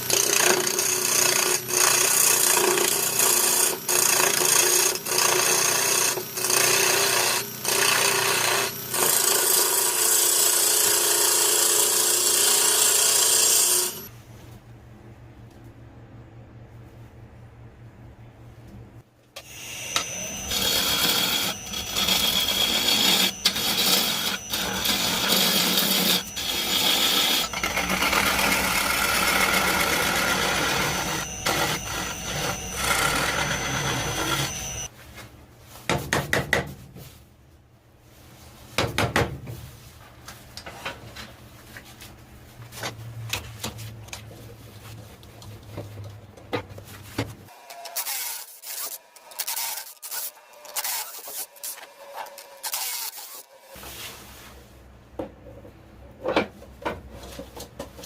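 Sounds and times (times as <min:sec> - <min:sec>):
tool rasping wood: 0:19.8 - 0:34.9
scraping and rubbing strokes: 0:53.4 - 0:54.8.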